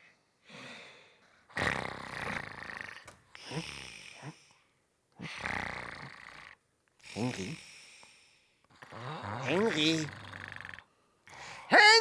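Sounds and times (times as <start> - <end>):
loud rasping snoring: 1.5 - 4.4, 5.2 - 7.6, 8.7 - 10.9.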